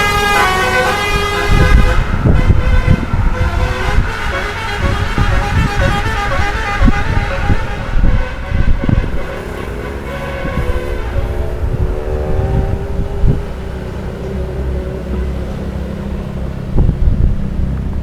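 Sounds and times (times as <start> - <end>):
musical bus horn melody: 0.0 - 11.9
loud low rumble: 0.0 - 14.8.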